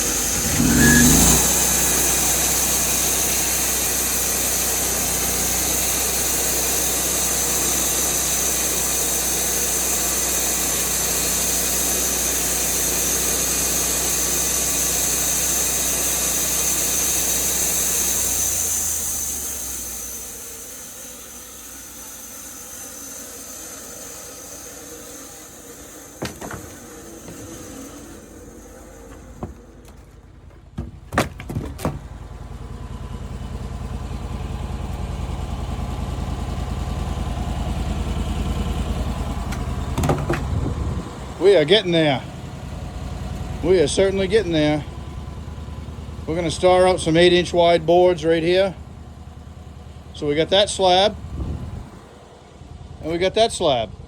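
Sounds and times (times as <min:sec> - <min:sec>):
sawmill engine running: 0:00.0 - 0:54.0.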